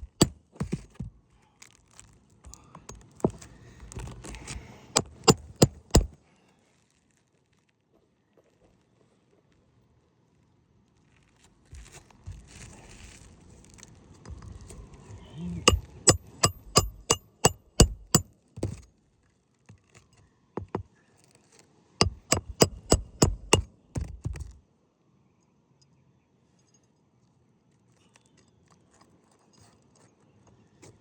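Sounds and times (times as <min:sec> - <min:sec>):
shingles rustling and scraping: 0:00.0 - 0:07.5, 0:11.2 - 0:15.1
hammer blows on metal: 0:15.6 - 0:18.3, 0:22.0 - 0:24.4.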